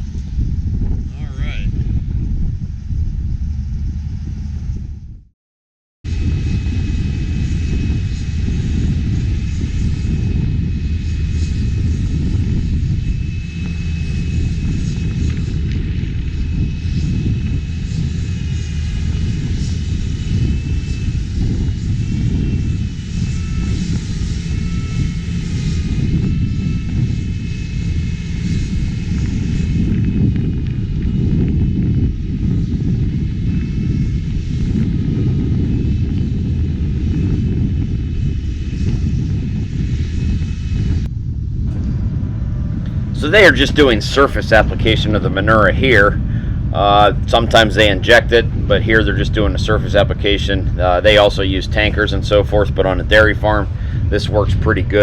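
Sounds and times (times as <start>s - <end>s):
drone propellers whining: 0.0s - 5.2s, 6.1s - 55.0s
low rumble of wind: 0.0s - 5.3s, 6.0s - 55.0s.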